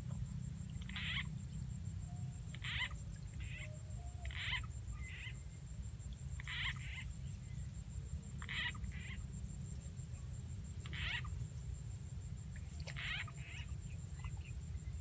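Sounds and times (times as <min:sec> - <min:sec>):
recorded frog croak: 0:00.0 - 0:01.6, 0:06.4 - 0:07.1, 0:10.8 - 0:11.4, 0:12.5 - 0:14.4.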